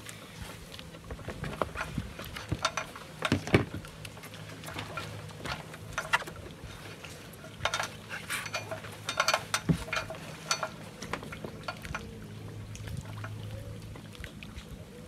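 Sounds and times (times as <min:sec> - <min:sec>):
small gear clicking and clinking: 0:04.6 - 0:12.1.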